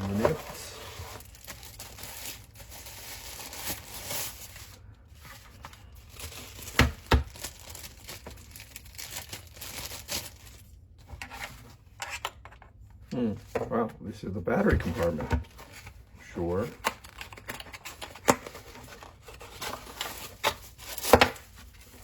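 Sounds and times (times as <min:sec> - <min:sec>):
packaging crinkling and tearing: 0:00.0 - 0:10.8, 0:16.7 - 0:22.0.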